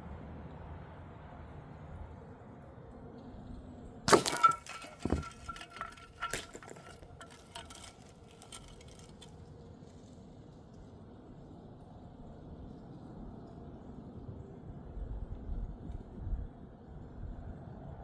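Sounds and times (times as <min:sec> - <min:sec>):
glass bottle shattering: 0:04.1 - 0:09.2
glass pieces clinking: 0:04.1 - 0:09.2.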